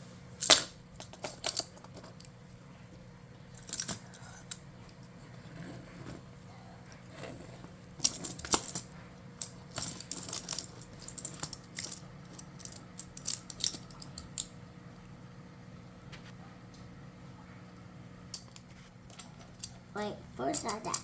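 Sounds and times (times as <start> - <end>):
magnetic toy blocks clicking: 9.4 - 14.5, 20.5 - 21.0.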